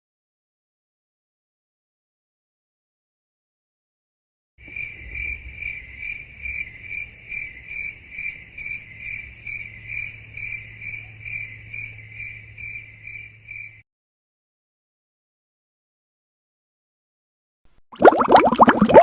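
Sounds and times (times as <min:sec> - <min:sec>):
crickets chirping: 0:04.6 - 0:13.8.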